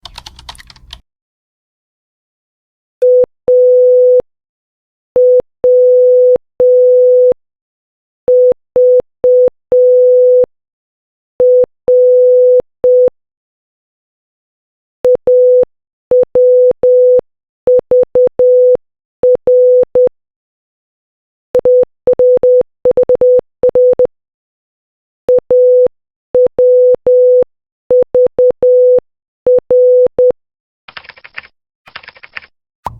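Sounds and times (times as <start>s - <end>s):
morse code beeps: 21.6s - 24.0s.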